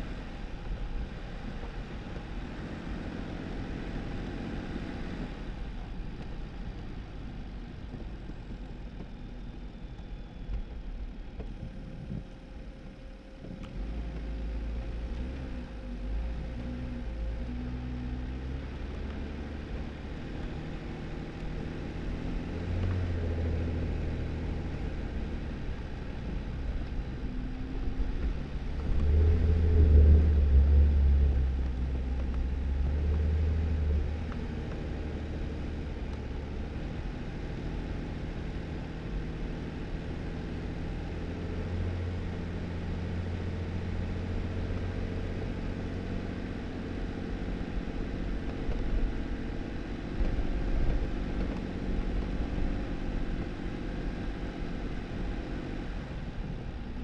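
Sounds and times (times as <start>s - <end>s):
car engine running: 0.0s - 57.0s
tyres rumbling on dirt road: 0.0s - 57.0s.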